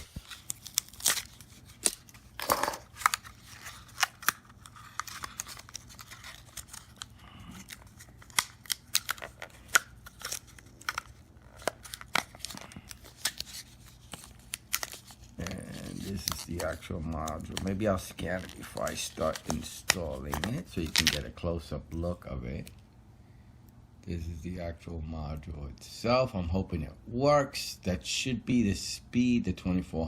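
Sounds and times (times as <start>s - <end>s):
plastic packaging crinkling: 0.0s - 21.4s.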